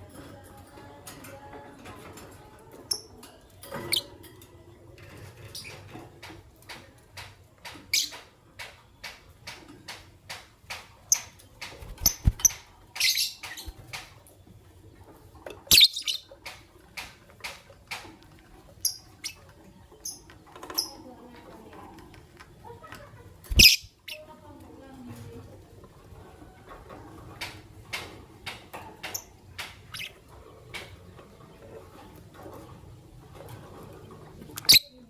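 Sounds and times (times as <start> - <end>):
lovebirds chirping: 11.1 - 14.0, 15.7 - 16.3, 23.5 - 24.3.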